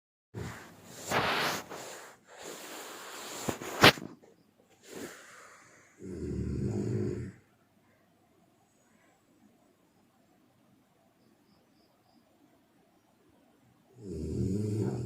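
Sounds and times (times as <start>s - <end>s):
person snoring: 4.8s - 7.5s, 14.0s - 15.0s.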